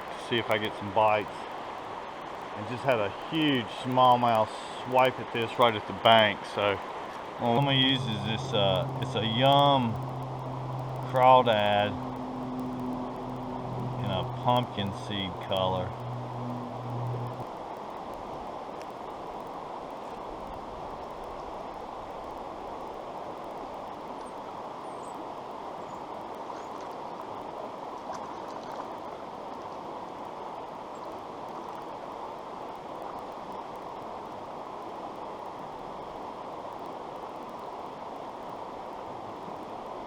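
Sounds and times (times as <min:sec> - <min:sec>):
creek water rushing: 0:00.0 - 0:40.0.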